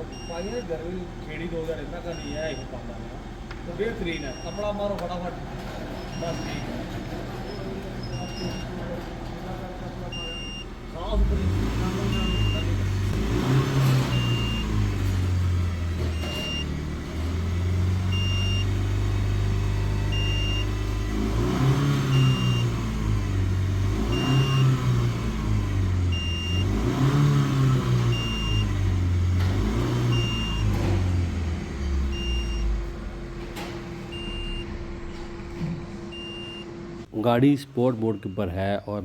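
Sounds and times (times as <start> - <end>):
car engine revving: 9.9 - 37.1
short electronic beep: 34.1 - 35.2, 36.1 - 36.7.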